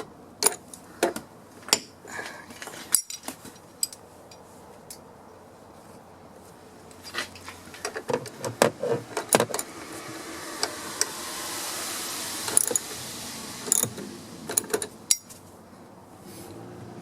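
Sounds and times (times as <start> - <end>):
soft hiss: 5.7 - 16.7.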